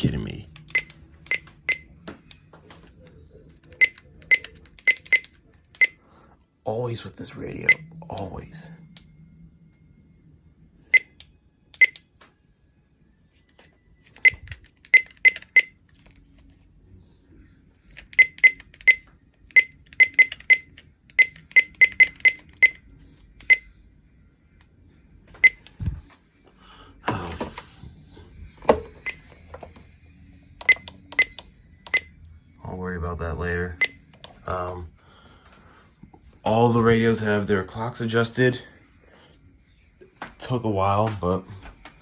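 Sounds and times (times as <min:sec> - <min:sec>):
keypad beeps: 0:00.5 - 0:01.9, 0:03.7 - 0:06.0, 0:07.5 - 0:08.3, 0:10.9 - 0:12.0, 0:14.2 - 0:15.8, 0:18.0 - 0:22.8, 0:25.4 - 0:26.0, 0:28.7 - 0:29.6, 0:30.6 - 0:32.1.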